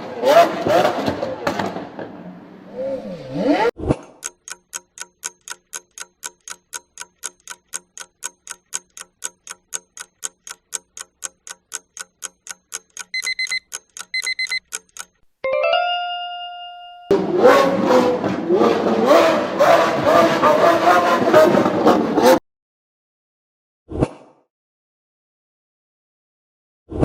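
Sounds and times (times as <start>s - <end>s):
clock ticking: 4.2s - 15.3s
short beeps: 13.1s - 14.7s
ringing chime: 15.4s - 17.1s.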